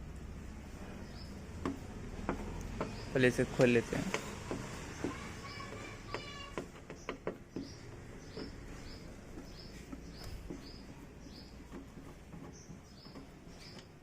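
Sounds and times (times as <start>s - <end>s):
small bird chirping: 1.0s - 1.6s, 2.4s - 14.0s
sharp clicks and knocks: 1.5s - 14.0s.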